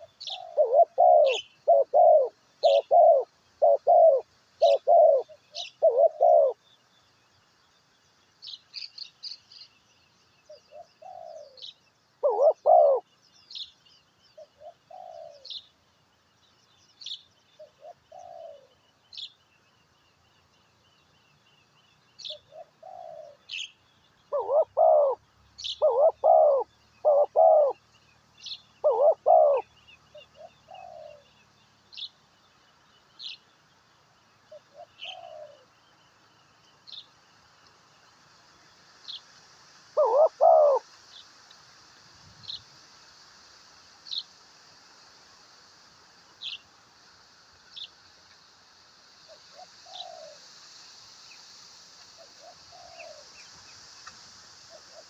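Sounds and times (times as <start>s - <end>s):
dove cooing: 0.0s - 6.6s, 10.7s - 11.6s, 12.2s - 13.0s, 14.5s - 15.5s, 17.7s - 18.7s, 22.4s - 23.4s, 24.3s - 27.8s, 28.8s - 29.7s, 30.4s - 31.2s, 34.5s - 35.7s, 40.0s - 40.8s, 49.6s - 50.4s
small bird chirping: 0.0s - 7.1s.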